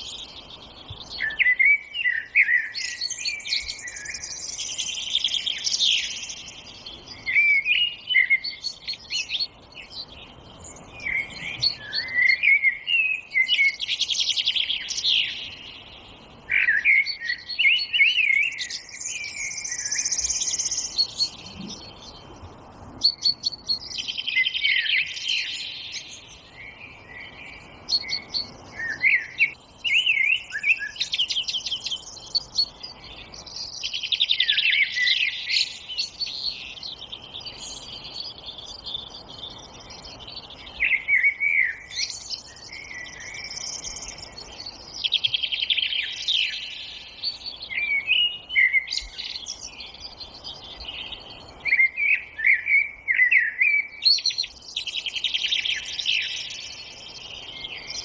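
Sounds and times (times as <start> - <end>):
faint background hiss: 0.0 - 58.0
songbirds singing: 0.0 - 58.0.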